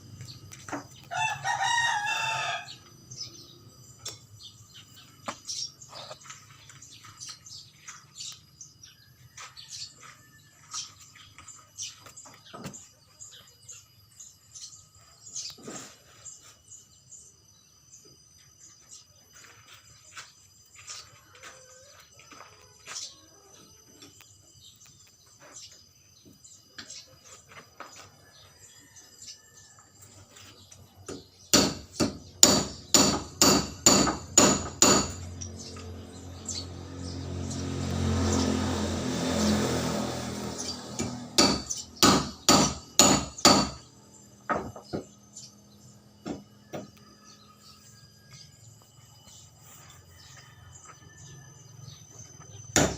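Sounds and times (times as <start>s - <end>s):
birds chirping: 0.0s - 39.6s, 40.4s - 52.9s.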